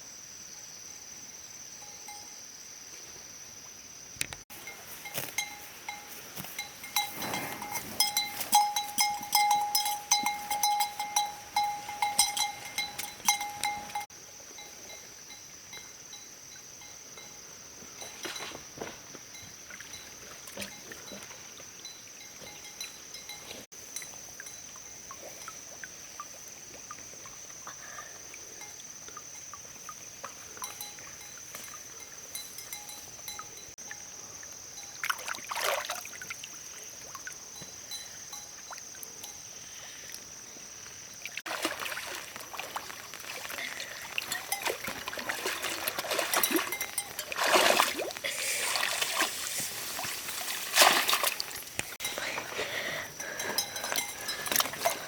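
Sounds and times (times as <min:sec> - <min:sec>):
water splashing and trickling: 0:04.5 - 0:55.0.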